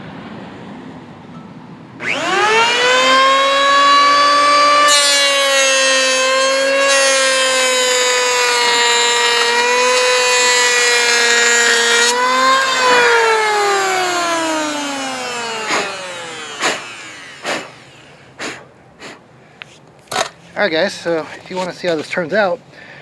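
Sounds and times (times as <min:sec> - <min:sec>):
electric planer motor whining: 0:02.0 - 0:18.3
planer blades hissing cut: 0:02.0 - 0:19.2.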